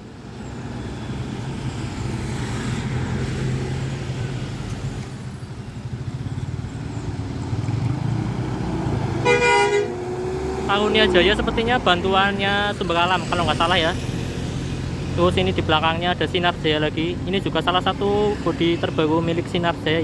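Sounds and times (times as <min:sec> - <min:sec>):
diesel bus engines rumbling: 0:00.0 - 0:20.0
traffic noise: 0:00.0 - 0:20.0
horn blast: 0:09.2 - 0:10.0.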